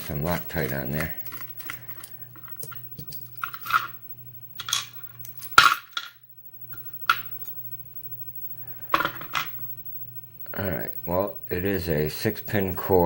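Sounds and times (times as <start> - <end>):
metal lock parts clinking: 1.2 - 4.0, 4.6 - 6.2.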